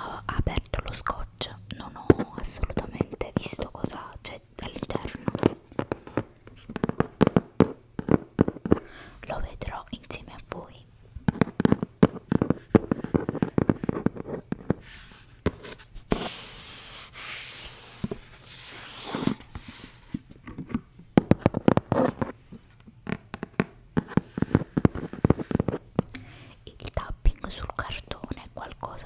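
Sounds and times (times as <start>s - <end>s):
crisp taps and clicks on packaging: 4.6s - 8.9s, 20.4s - 26.2s.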